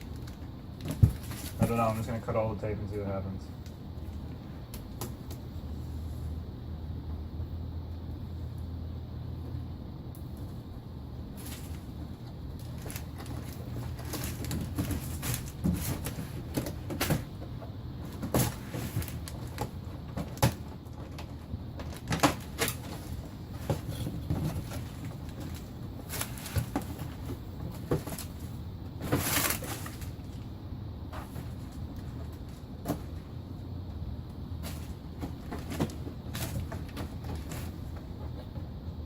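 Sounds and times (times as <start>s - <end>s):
steady low hum: 0.0s - 39.0s
rustling scrape: 11.4s - 17.2s, 21.9s - 30.4s.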